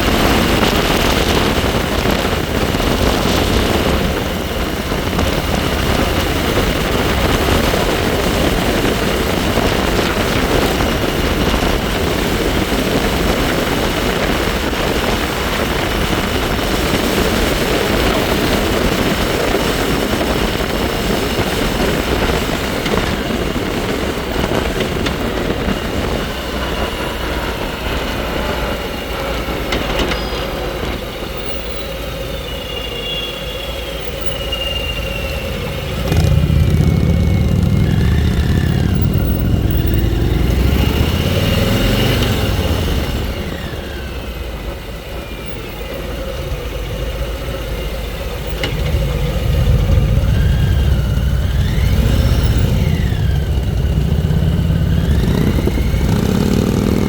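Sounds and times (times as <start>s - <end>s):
wind rushing over microphone: 0.0s - 31.4s, 34.1s - 45.4s, 46.0s - 57.0s
bike high whine: 15.9s - 57.0s.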